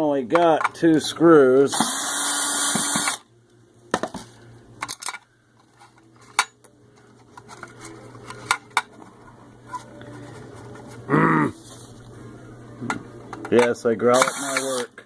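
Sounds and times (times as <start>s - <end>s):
metal parts clinking and clicking: 4.8s - 6.6s.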